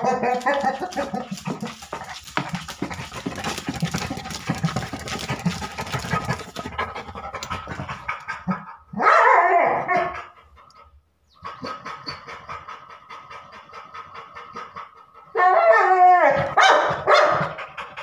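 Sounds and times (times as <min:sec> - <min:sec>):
dog barking: 0:00.0 - 0:01.4, 0:08.9 - 0:10.2, 0:15.4 - 0:17.7
dog panting: 0:00.0 - 0:08.9, 0:10.0 - 0:15.4, 0:16.7 - 0:18.0.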